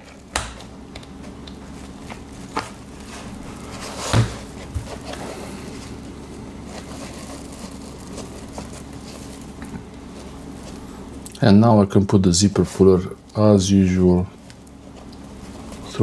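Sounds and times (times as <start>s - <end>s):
steady low hum: 0.0s - 16.0s.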